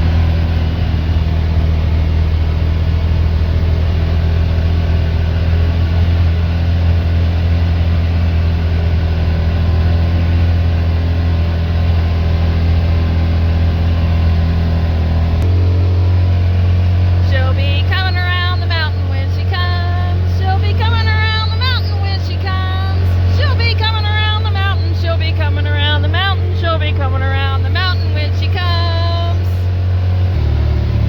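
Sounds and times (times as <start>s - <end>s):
road noise: 0.0s - 31.0s
vehicle engine droning: 0.0s - 31.0s.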